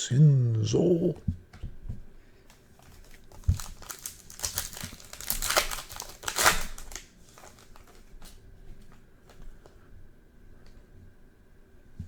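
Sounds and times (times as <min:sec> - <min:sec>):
foil wrapper crinkling and tearing: 0:02.5 - 0:09.4.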